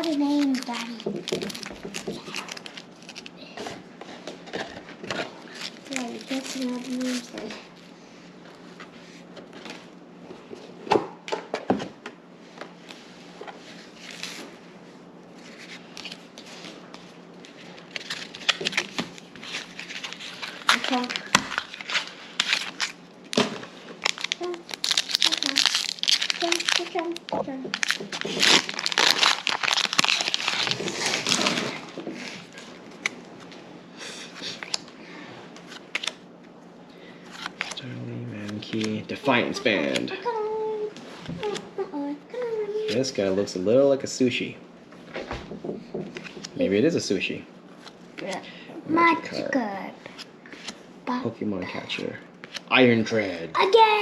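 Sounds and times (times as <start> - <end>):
foil wrapper crinkling: 0.0 - 3.4, 5.5 - 7.6, 17.4 - 33.2
cards rustling and sliding: 15.3 - 23.0, 34.2 - 36.2, 37.1 - 40.1, 50.0 - 50.9.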